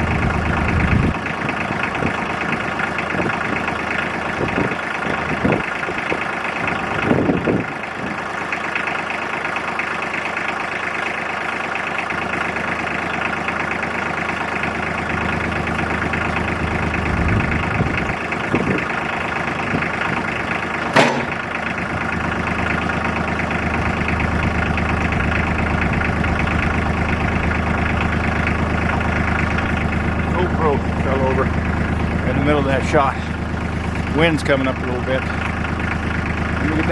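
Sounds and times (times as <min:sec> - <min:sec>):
tractor engine running: 0:00.0 - 0:36.9
sharp knock: 0:20.9 - 0:21.4.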